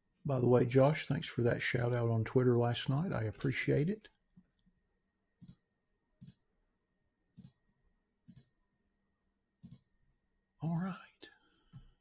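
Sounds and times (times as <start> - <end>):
computer mouse clicking: 5.4 - 5.6, 6.2 - 6.4, 7.3 - 7.6, 8.2 - 8.6, 9.6 - 9.9.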